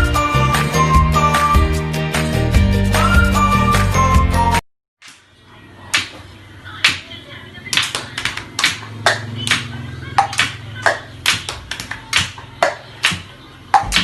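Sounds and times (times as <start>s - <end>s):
taps on hard objects: 7.8s - 14.0s.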